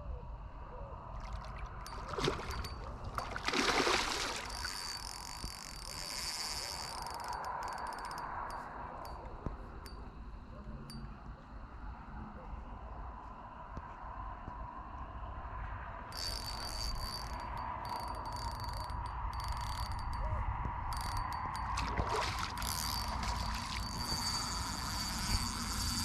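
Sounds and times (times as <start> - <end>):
fishing reel ratcheting and whirring: 1.8 - 10.1, 16.1 - 26.0.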